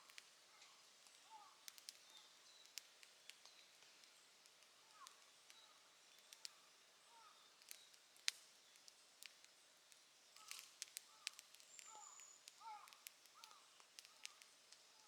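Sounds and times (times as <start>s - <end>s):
wood fire crackling and popping: 0.0s - 15.0s
faint bird calls: 0.5s - 2.2s, 4.9s - 7.6s, 10.4s - 15.0s.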